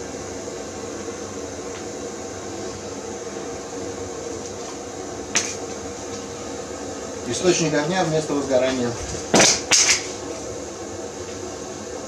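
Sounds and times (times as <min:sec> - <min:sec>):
blowtorch flame hissing: 0:00.0 - 0:12.0.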